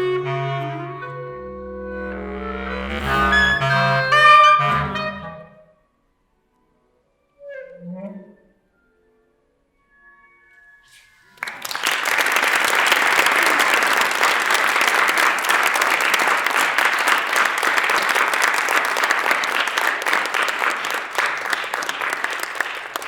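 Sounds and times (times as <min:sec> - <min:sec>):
clarinet notes: 0:00.0 - 0:05.7
audience applauding: 0:11.4 - 0:23.0.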